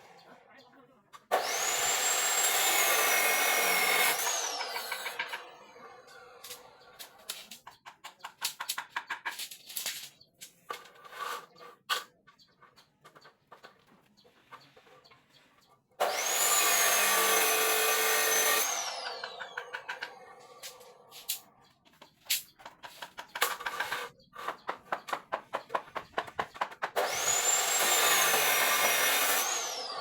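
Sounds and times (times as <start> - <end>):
power tool whining: 1.3 - 6.9, 16.0 - 21.1, 26.6 - 30.0
tapping and knocks of handwork: 24.5 - 27.0.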